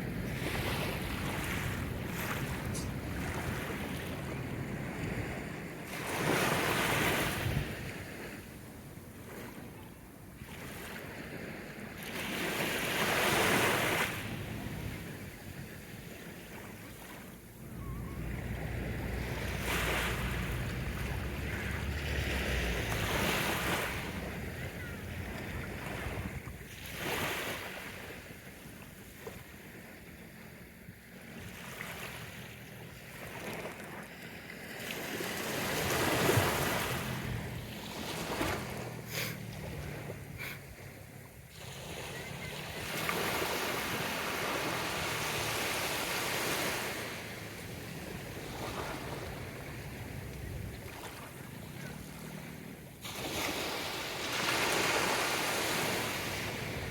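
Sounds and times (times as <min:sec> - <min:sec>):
wind buffeting microphone: 0:00.0 - 0:05.9, 0:07.0 - 0:08.6, 0:17.4 - 0:27.3
sea waves washing onto shore: 0:00.0 - 0:08.4, 0:11.9 - 0:28.2
sea waves breaking: 0:00.0 - 0:56.9
wind: 0:00.0 - 0:56.9.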